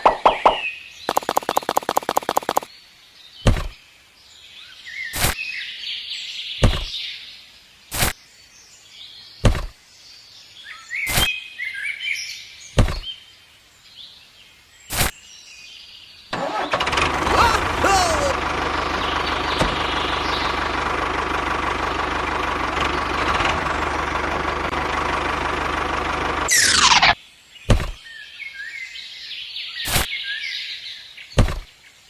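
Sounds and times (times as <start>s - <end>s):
small birds chirping: 0.0s - 16.3s, 19.0s - 20.6s
rapid clicks: 1.1s - 2.7s
sharp thumps: 3.4s - 3.8s, 6.6s - 6.9s, 9.4s - 9.8s, 12.8s - 13.1s.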